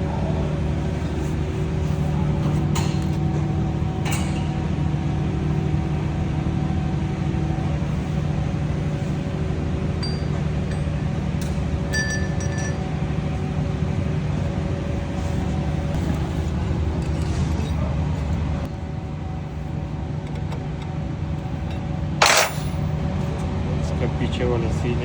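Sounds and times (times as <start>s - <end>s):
mechanical hum: 0.0s - 25.0s
metallic clinks: 10.0s - 13.0s, 22.2s - 23.0s
short metallic ring: 10.0s - 13.0s, 22.2s - 23.0s.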